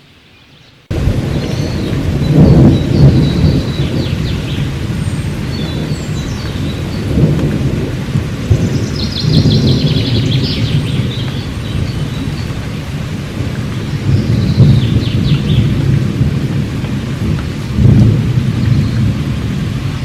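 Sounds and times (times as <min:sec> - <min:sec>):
steady rain: 0:00.0 - 0:20.0
rolling thunder: 0:00.9 - 0:20.0.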